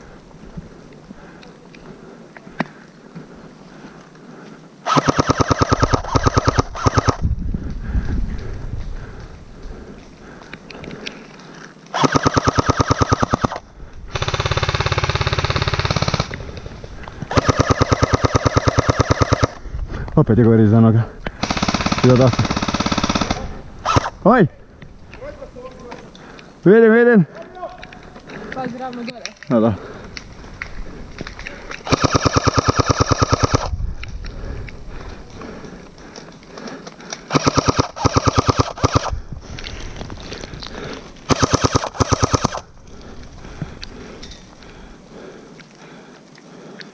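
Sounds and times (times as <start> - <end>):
airsoft rifles firing full-auto: 4.8 - 7.2, 11.9 - 16.5, 17.3 - 19.6, 21.4 - 24.2, 31.8 - 33.7, 37.3 - 39.1, 41.3 - 42.7.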